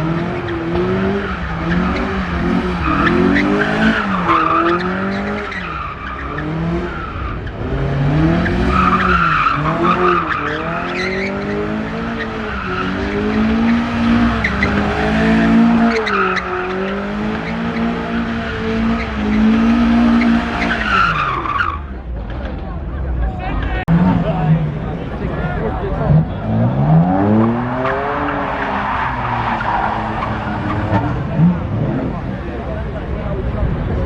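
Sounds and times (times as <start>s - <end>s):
car engine revving: 0.0s - 22.9s, 23.8s - 34.0s.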